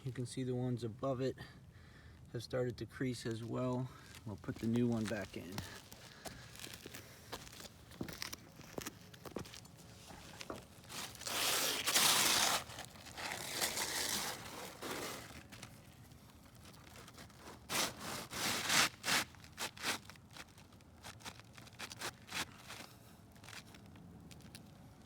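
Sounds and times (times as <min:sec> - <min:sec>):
roof shingle scraping: 0:03.9 - 0:23.8.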